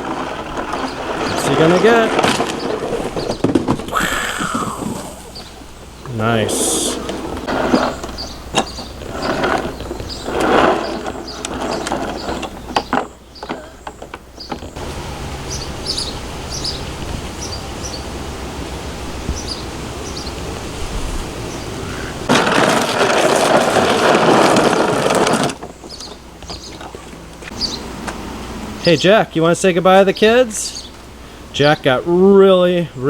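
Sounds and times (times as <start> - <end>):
ride-on toy drivetrain whirring: 0.0 - 2.0, 22.3 - 26.2.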